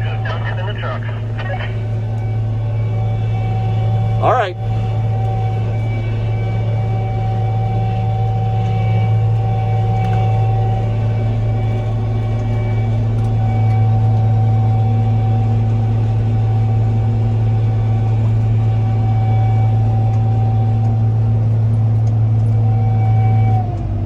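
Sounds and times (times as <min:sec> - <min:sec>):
combine harvester running: 0:00.0 - 0:14.1.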